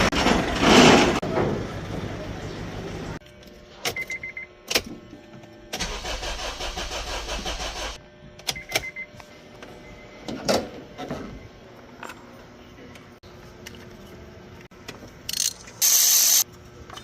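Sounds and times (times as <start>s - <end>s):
car engine cranking: 5.8s - 8.0s.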